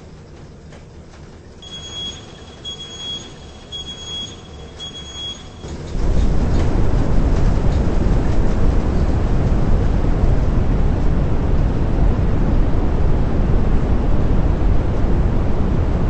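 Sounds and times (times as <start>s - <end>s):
high-pitched electronic alarm beeps: 1.6s - 5.8s
steady low rumble: 1.7s - 16.0s.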